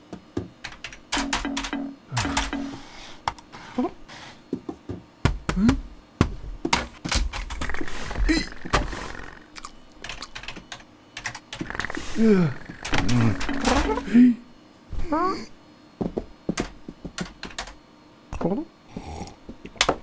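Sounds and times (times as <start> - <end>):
cartoon knocks and thuds: 0.1 - 2.9, 4.6 - 9.2, 12.7 - 14.2
vocal squeaks: 11.6 - 14.2.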